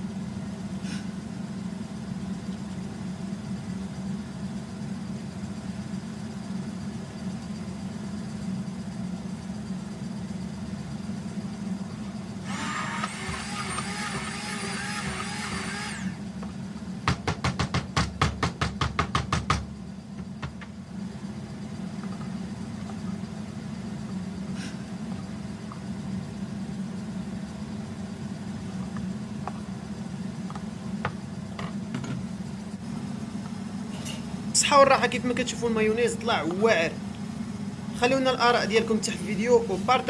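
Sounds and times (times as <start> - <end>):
steady low hum: 0.0 - 40.0
immersion blender motor whirring: 12.4 - 16.2
rapid knocks: 17.0 - 20.7.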